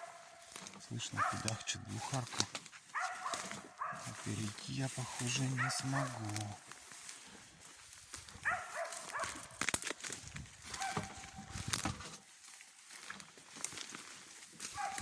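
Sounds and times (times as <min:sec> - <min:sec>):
dog barking: 0:00.0 - 0:00.4, 0:01.0 - 0:02.2, 0:02.9 - 0:04.4, 0:05.3 - 0:06.6, 0:08.4 - 0:09.6, 0:10.7 - 0:11.5, 0:14.7 - 0:15.0
sharp cracks: 0:09.0 - 0:11.2.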